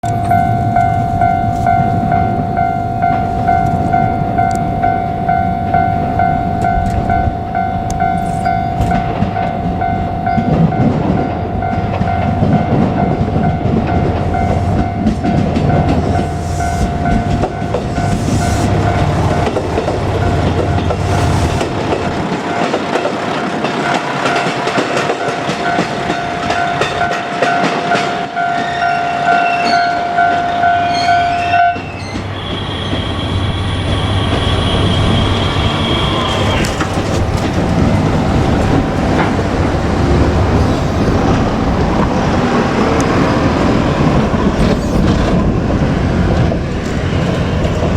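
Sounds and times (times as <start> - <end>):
crossing warning bell: 0.0 - 47.9
diesel railcar engine running: 0.0 - 47.9
high-pitched train squeal: 0.2 - 10.6, 11.3 - 21.7, 28.1 - 37.4, 42.2 - 47.9
train wheels clattering on rails: 3.0 - 47.9.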